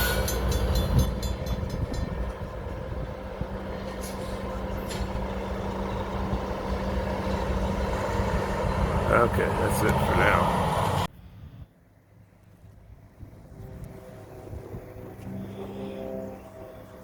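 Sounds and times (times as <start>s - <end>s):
diesel engine humming: 0.0s - 11.1s
rail wheels clicking: 0.0s - 11.1s.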